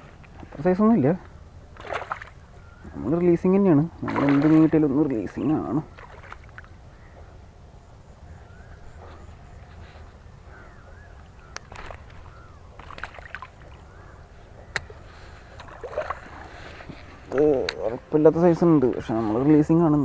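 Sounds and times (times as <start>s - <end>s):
steady low hum: 0.0s - 20.0s
water sloshing: 0.0s - 20.0s.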